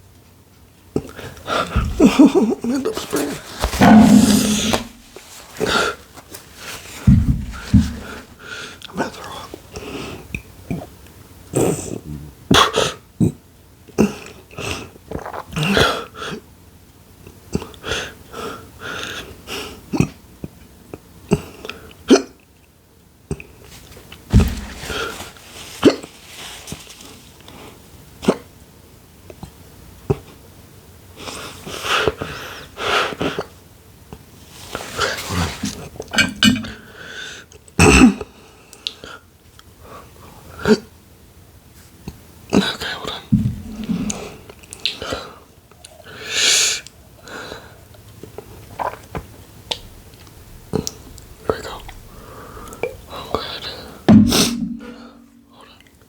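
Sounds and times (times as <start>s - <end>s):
throat noises: 1.5s - 5.2s, 7.1s - 8.3s, 43.3s - 44.5s, 49.7s - 55.8s
person hiccupping: 1.8s - 3.0s, 3.7s - 5.0s, 43.4s - 44.3s
gasping wheezing breaths: 51.8s - 55.7s.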